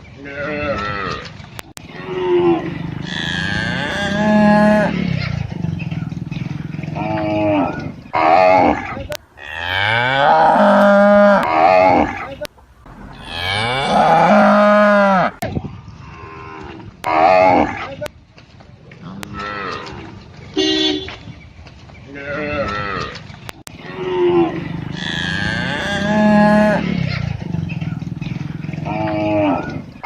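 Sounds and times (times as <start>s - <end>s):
cattle mooing: 0.2s - 15.4s, 22.2s - 23.2s, 23.8s - 30.0s.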